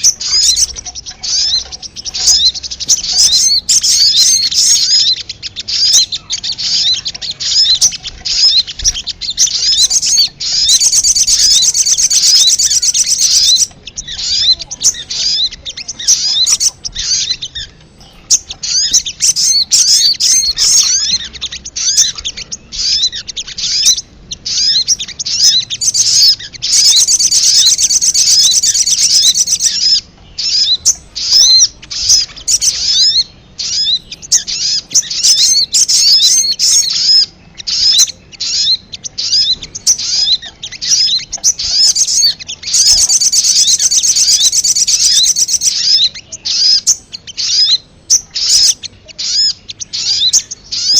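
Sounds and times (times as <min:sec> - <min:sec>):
bird chirping and trilling: 0:00.0 - 0:50.9.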